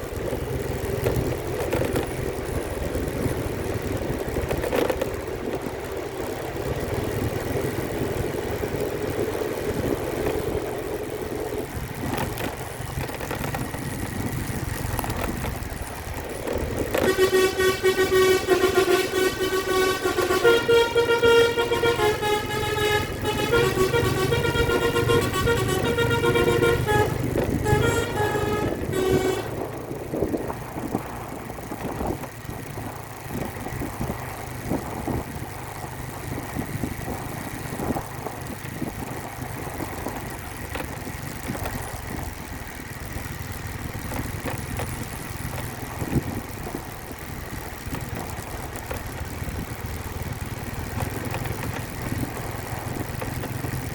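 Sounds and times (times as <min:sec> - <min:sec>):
diesel bus engine: 0:00.0 - 0:53.9
road noise: 0:00.0 - 0:53.9
bus musical horn playing a tune: 0:16.8 - 0:29.8.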